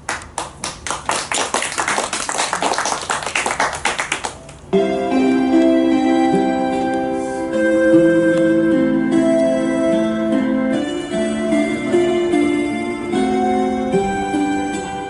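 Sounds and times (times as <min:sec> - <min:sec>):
audience clapping: 0:00.0 - 0:04.7
instrumental music with held chords: 0:04.7 - 0:15.0.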